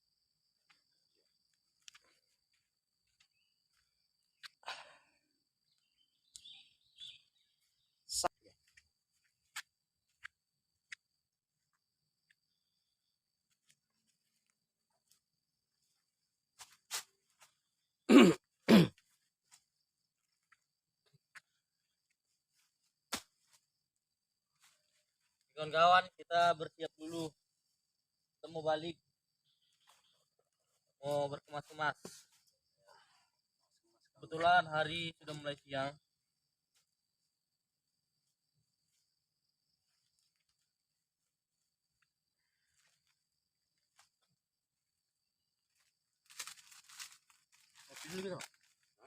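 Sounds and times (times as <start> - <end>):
man clearing his throat: 18.1 - 19.0.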